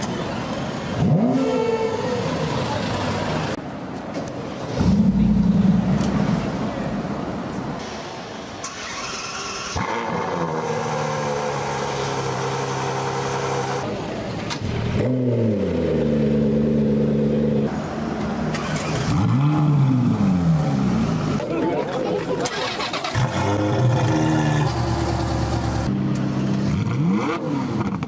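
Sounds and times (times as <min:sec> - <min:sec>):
car engines starting and idling: 0:00.0 - 0:28.0.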